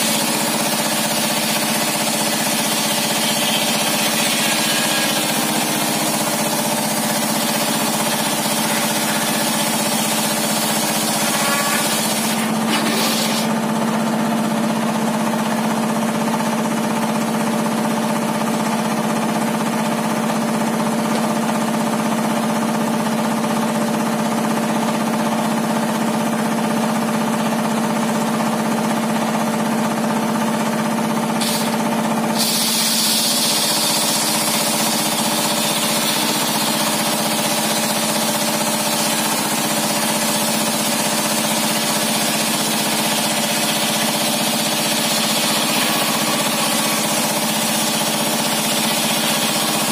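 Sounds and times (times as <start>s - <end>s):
circular saw running: 0.0s - 15.8s, 30.6s - 49.9s.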